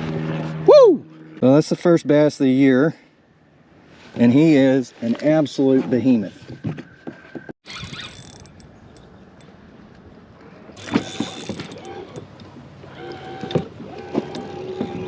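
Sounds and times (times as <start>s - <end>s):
knocks and rattles in kayak: 10.8s - 15.0s.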